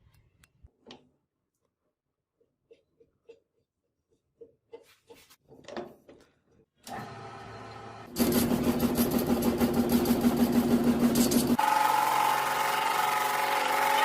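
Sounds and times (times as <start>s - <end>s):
electric power tool humming: 6.9s - 14.0s.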